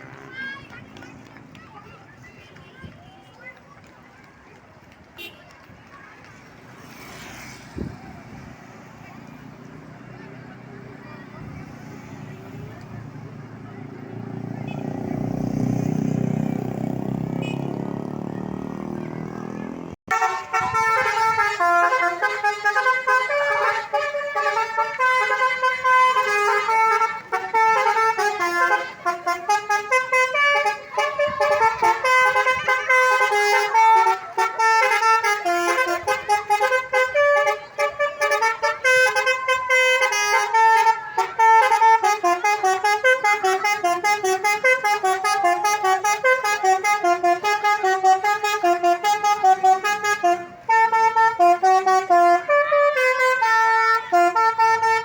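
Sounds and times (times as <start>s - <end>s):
road traffic rumbling: 0.0s - 55.0s
bus multi-tone air horn melody: 20.1s - 55.0s.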